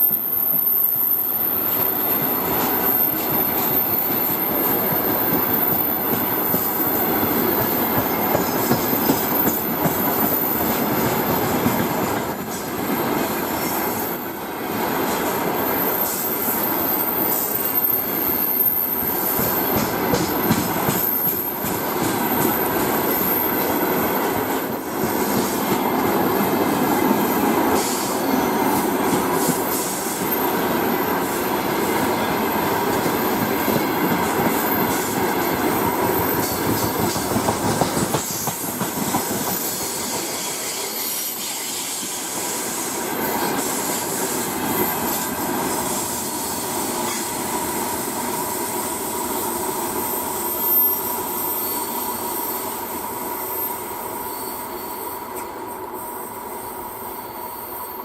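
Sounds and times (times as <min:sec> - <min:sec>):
light wheel squeal: 0:00.0 - 0:11.5, 0:15.1 - 0:20.1, 0:25.4 - 0:31.3, 0:39.4 - 0:47.5, 0:50.0 - 0:58.0
train wheels rumbling on rails: 0:00.0 - 0:57.0.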